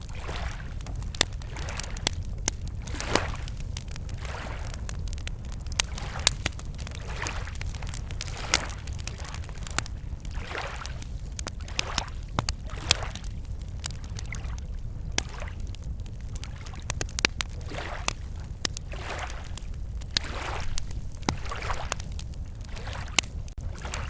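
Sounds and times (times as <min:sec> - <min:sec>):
campfire crackling and popping: 0:00.0 - 0:24.0
waves lapping against shore: 0:00.0 - 0:24.0.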